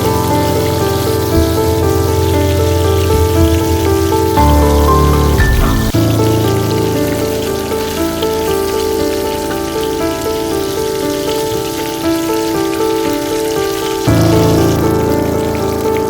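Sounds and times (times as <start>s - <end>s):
food sizzling in a pan: 0.0s - 16.0s
instrumental music: 0.0s - 16.0s.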